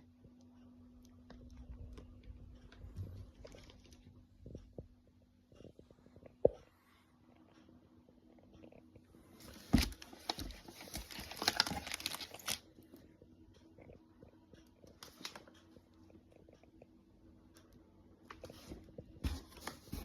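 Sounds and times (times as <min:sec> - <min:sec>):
wrappers rustling and crinkling: 0:09.3 - 0:12.6.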